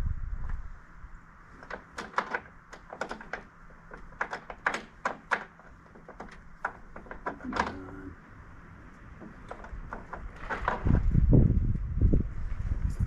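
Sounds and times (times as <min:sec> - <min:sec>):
metal knocks and clunks: 0:01.6 - 0:08.2, 0:09.1 - 0:11.2.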